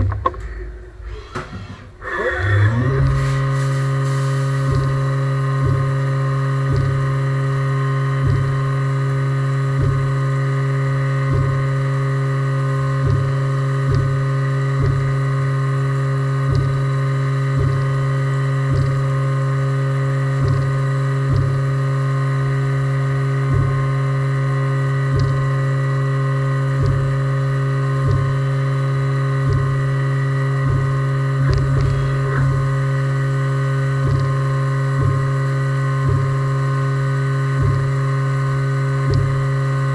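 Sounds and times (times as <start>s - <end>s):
mill spindle humming: 0.0s - 39.9s
cutter knocking: 4.6s - 9.0s, 9.7s - 10.3s, 11.2s - 11.8s, 13.0s - 15.6s, 16.4s - 19.3s, 20.4s - 21.7s, 23.4s - 24.1s, 25.0s - 26.0s, 26.6s - 39.9s.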